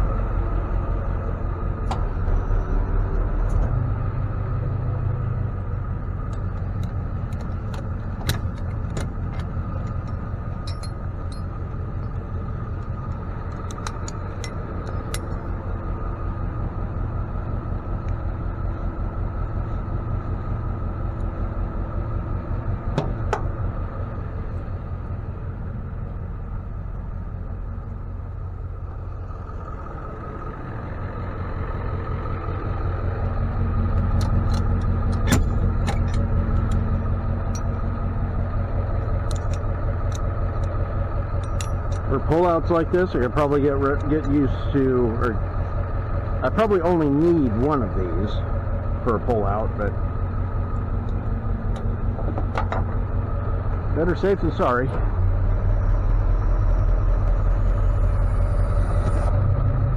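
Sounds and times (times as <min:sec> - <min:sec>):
truck engine running: 0:00.0 - 0:59.9
metallic clicks and clinks: 0:08.2 - 0:12.2, 0:12.8 - 0:15.5, 0:41.4 - 0:42.5.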